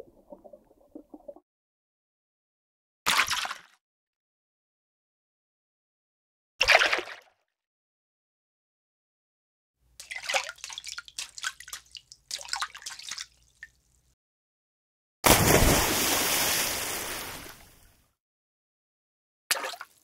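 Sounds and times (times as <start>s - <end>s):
small water splashes: 10.0s - 14.0s, 15.3s - 17.9s
big water splash: 15.2s - 17.9s.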